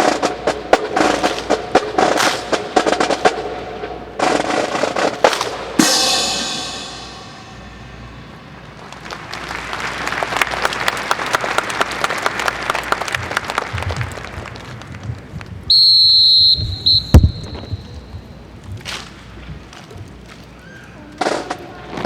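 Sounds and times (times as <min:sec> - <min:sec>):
applause: 0:08.7 - 0:15.6
long high whistle blast: 0:15.7 - 0:17.9.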